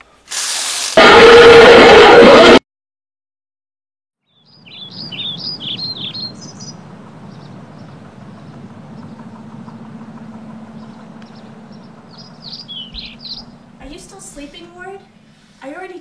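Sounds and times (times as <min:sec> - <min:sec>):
birds chirping and twittering: 0:04.2 - 0:15.6
low hum: 0:05.0 - 0:15.6.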